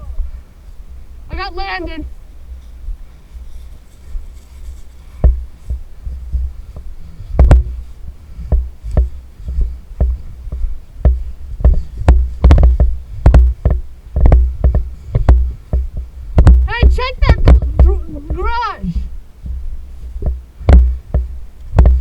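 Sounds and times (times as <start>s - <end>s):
heavy low rumble: 0.0s - 22.0s
thuds and sharp knocks: 5.2s - 19.6s, 20.2s - 22.0s.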